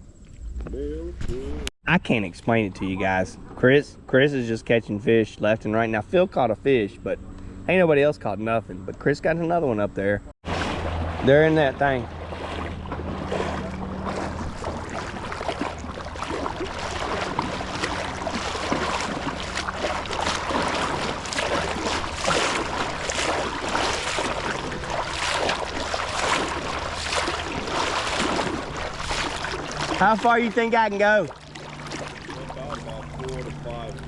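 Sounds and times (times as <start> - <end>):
small water splashes: 10.4 - 34.0
river water rushing: 10.5 - 34.0.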